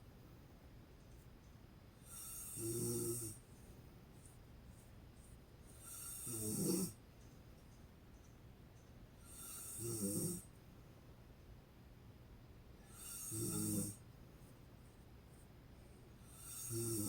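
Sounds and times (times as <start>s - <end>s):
woman snoring: 2.0s - 3.4s, 5.8s - 7.0s, 9.2s - 10.5s, 12.9s - 14.0s, 16.2s - 17.0s.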